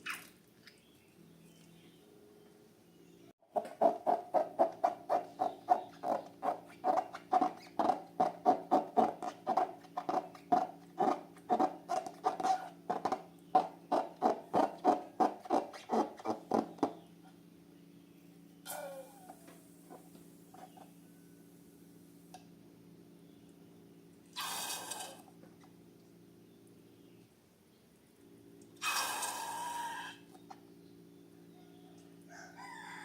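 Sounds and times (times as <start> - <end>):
rubber balloon squeaking: 4.1 - 16.8.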